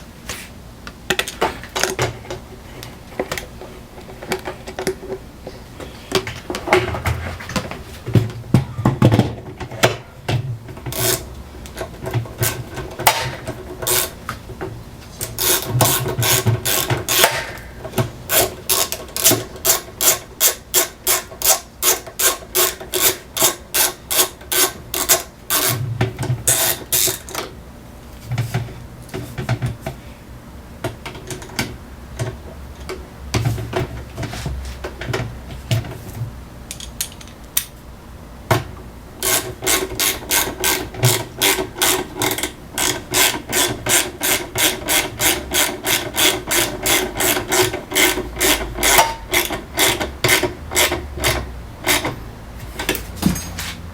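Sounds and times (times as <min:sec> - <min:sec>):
ratchet strokes: 0:10.9 - 0:11.3, 0:13.8 - 0:14.2, 0:15.2 - 0:17.6, 0:18.3 - 0:25.8, 0:39.2 - 0:52.1
hand tool scrapes and knocks: 0:39.2 - 0:53.9.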